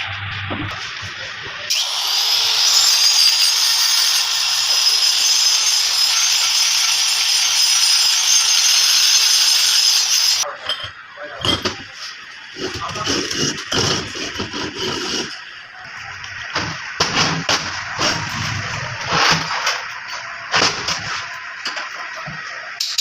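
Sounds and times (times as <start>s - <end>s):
power tool whining on metal: 1.7s - 10.4s.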